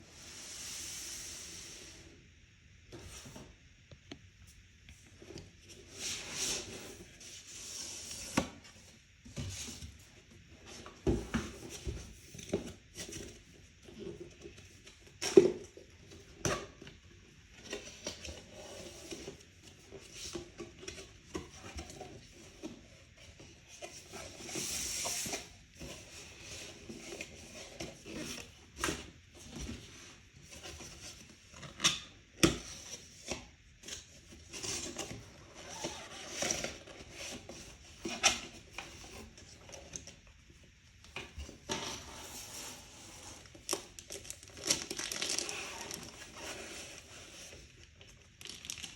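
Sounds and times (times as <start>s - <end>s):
packaging rustling: 43.3s - 48.9s.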